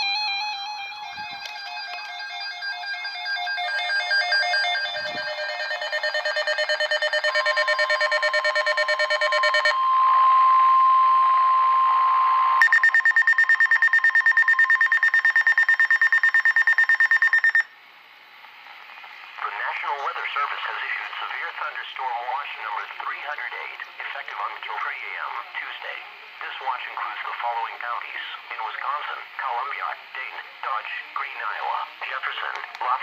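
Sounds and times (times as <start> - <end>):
steady high tone: 0.0 - 17.7
pulsing electronic beeps: 3.6 - 9.8, 12.6 - 17.7.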